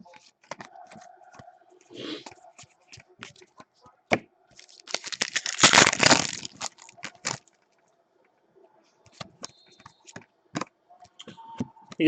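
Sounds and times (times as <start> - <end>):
wrapper tearing and crinkling: 4.6 - 7.6.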